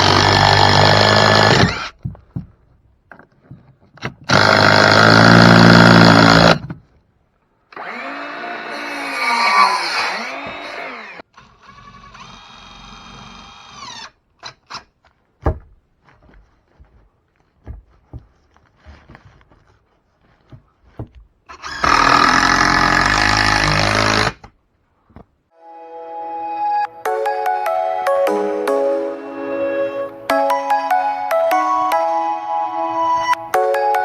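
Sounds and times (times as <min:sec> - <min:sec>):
power tool whirring: 0:00.0 - 0:02.0, 0:04.2 - 0:06.8, 0:07.7 - 0:14.8, 0:21.5 - 0:24.5
music: 0:25.6 - 0:34.0.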